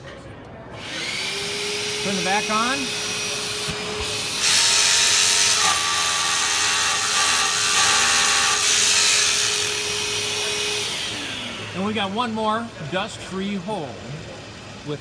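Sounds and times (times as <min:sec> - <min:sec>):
vacuum dust collector whine: 0:00.8 - 0:12.4
drill boring a hole: 0:00.8 - 0:15.0.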